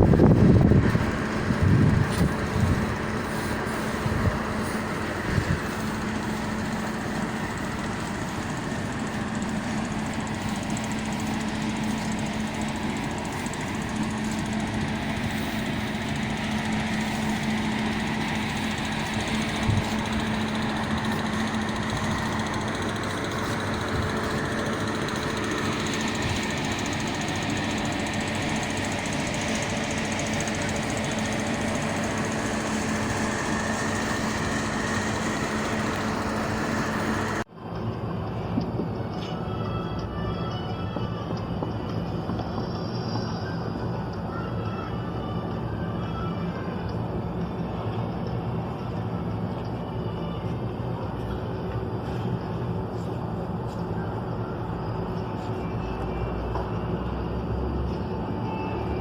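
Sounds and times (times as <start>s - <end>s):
machine humming: 0.0s - 38.7s.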